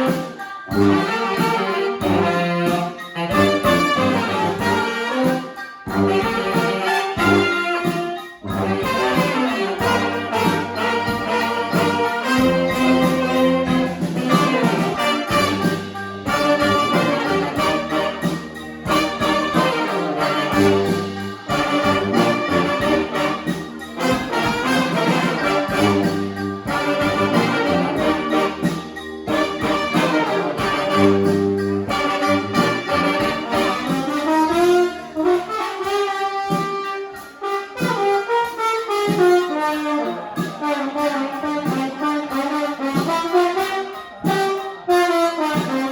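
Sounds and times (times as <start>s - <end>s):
brass band playing funk: 0.0s - 45.9s.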